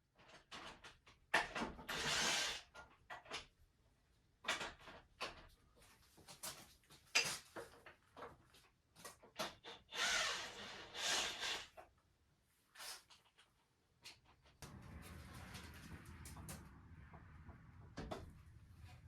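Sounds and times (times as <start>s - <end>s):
low steady hum: 14.6s - 19.0s.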